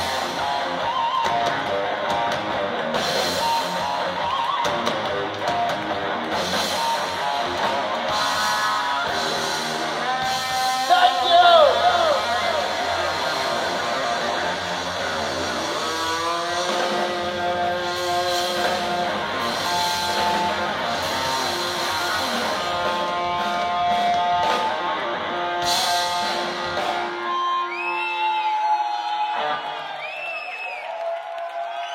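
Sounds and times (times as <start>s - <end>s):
rock music with guitar: 0.0s - 29.8s.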